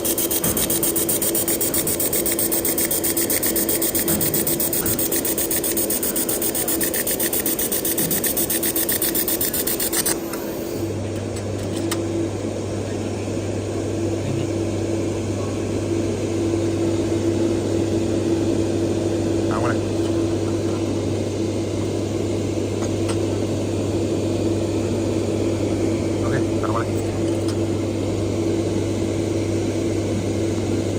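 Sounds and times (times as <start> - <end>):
laser welder pulsing buzz: 0.0 - 11.0
steady machine tone: 0.0 - 11.0.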